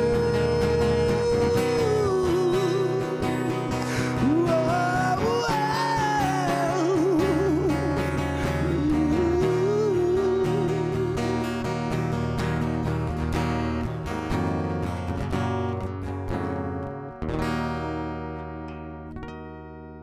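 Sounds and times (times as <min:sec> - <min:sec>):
person singing with vibrato: 0:00.0 - 0:12.2
strummed acoustic guitar and band: 0:00.0 - 0:20.0.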